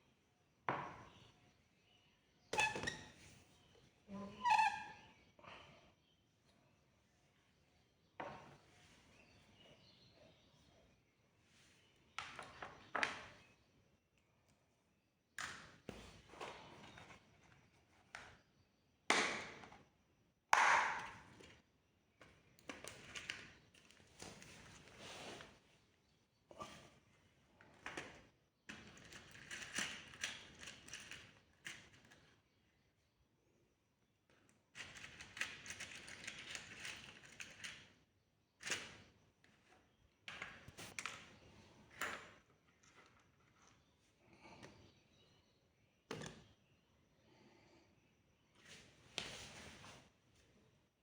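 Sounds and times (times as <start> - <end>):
light clicks and clatter: 34.7 - 37.9.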